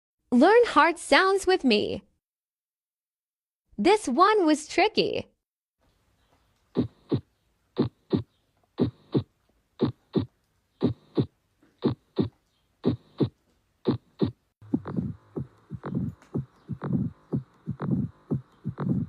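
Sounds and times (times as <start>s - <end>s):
heartbeat thuds: 6.8s - 19.0s.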